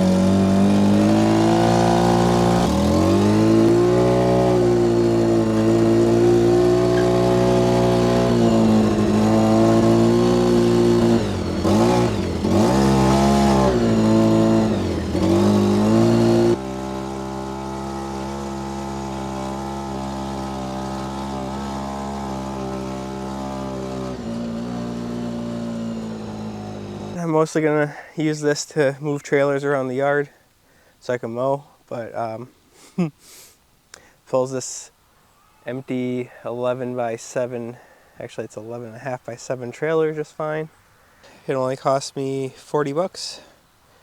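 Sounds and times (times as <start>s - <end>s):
utility vehicle engine running: 0.0s - 27.2s.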